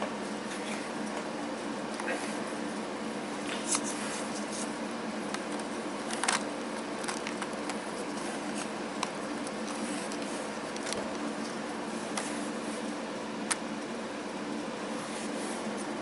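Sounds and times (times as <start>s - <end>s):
steady low hum: 0.0s - 16.0s
plastic pieces clicking and rustling: 5.3s - 7.8s.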